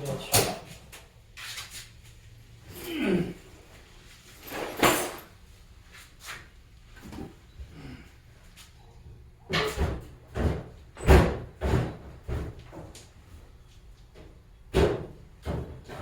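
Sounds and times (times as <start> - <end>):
drawers and doors opening and shutting: 4.4 - 5.3
knocks and bangs of rummaging: 9.5 - 12.9.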